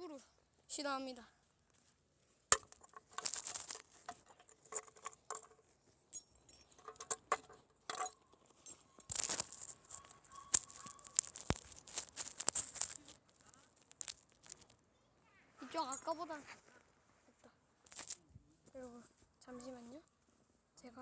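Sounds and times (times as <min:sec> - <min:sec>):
clicks and rustling from handling: 0:02.5 - 0:14.8, 0:17.9 - 0:18.2.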